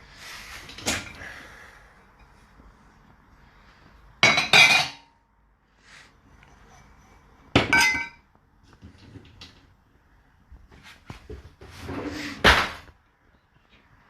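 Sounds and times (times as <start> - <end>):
dishes clinking and clattering: 4.2 - 5.1, 6.6 - 8.3.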